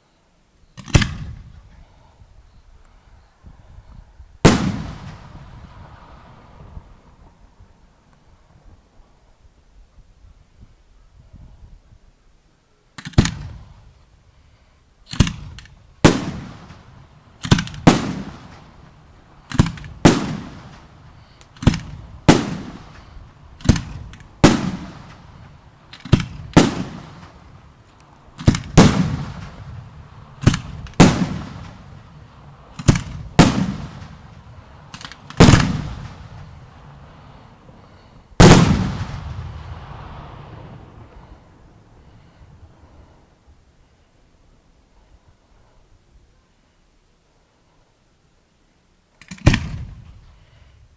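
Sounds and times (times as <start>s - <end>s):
fireworks bursting with bangs: 4.4s - 7.0s, 15.1s - 41.7s.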